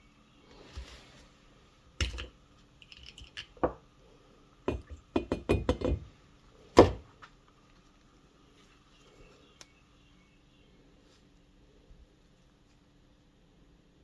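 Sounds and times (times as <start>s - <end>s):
tools knocking on workbench: 4.7s - 6.1s, 6.8s - 7.1s.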